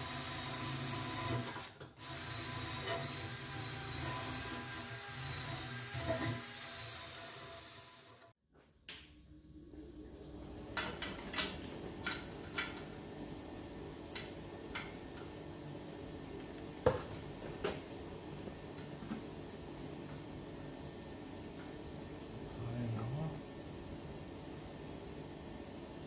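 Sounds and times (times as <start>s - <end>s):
steady low hum: 9.0s - 26.0s.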